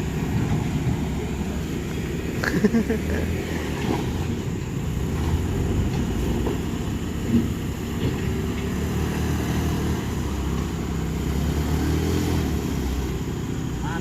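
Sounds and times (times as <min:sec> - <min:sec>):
heavy vehicle engine humming: 0:00.0 - 0:14.0.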